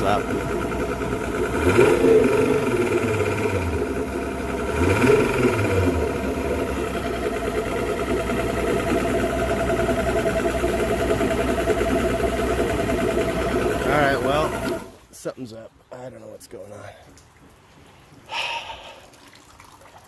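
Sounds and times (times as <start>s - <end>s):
outboard motor idling and revving: 0.0s - 15.1s.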